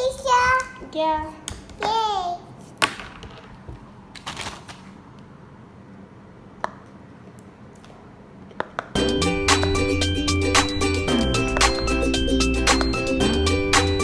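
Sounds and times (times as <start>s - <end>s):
music: 9.0s - 14.0s.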